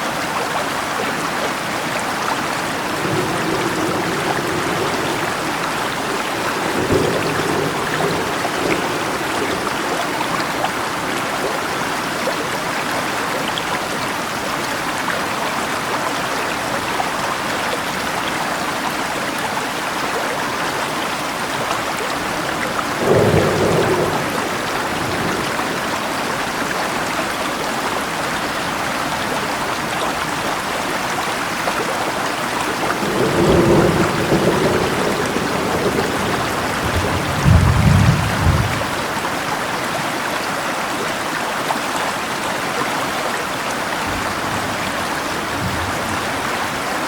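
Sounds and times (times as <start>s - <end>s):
running water: 0.0s - 47.0s
steady rainfall: 0.0s - 47.0s
thunder rumbling: 2.6s - 11.8s, 22.9s - 27.4s, 32.6s - 39.3s.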